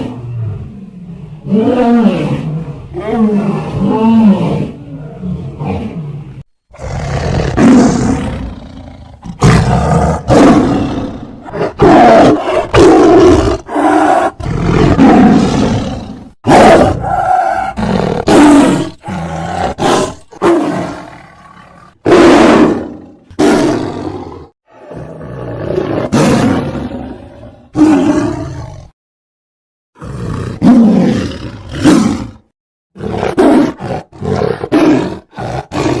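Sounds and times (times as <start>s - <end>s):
big cat roaring: 0.0s - 29.0s, 30.0s - 36.0s.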